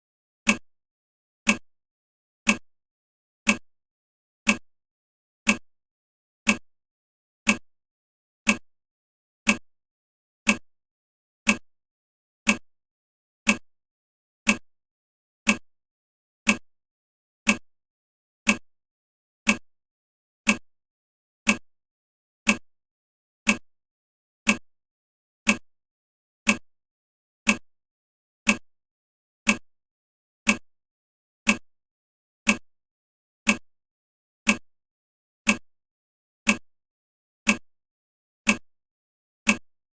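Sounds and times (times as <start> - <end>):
timer ticking: 38.5 - 38.7, 39.5 - 39.7.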